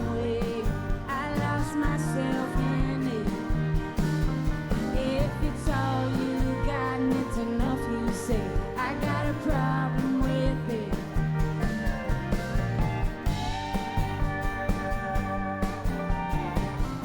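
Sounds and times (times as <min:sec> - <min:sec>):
live band playing: 0:00.0 - 0:17.0
drum beat: 0:11.0 - 0:17.0.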